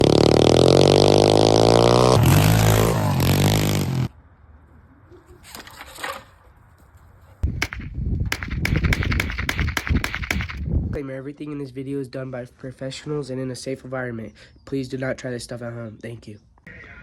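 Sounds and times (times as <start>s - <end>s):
small engine revving: 0.0s - 4.1s.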